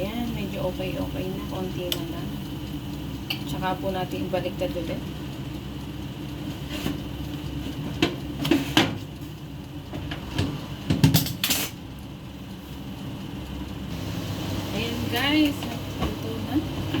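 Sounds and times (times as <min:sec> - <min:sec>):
steady low hum: 0:00.0 - 0:17.0
utensils clanking on metal pan: 0:10.9 - 0:11.8.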